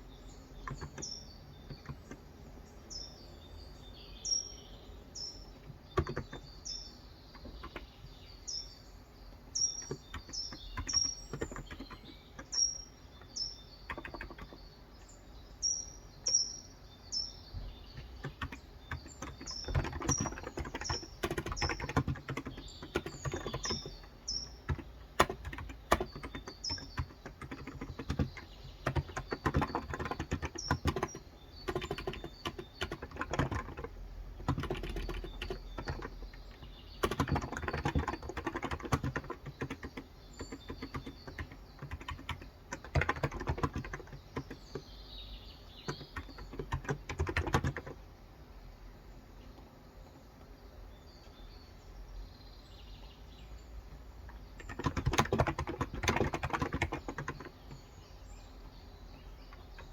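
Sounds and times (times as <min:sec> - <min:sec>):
bird chirping: 0:00.0 - 0:59.9
fast keyboard typing: 0:00.6 - 0:02.3, 0:05.4 - 0:06.7, 0:07.3 - 0:08.3, 0:09.7 - 0:14.7, 0:17.6 - 0:45.0, 0:45.7 - 0:48.1, 0:54.3 - 0:59.9.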